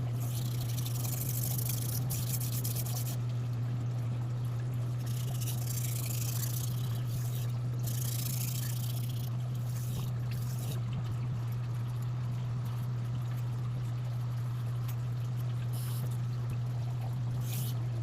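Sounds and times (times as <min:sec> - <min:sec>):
steady low hum: 0:00.0 - 0:18.0
knife scraping on whetstone: 0:17.4 - 0:17.8.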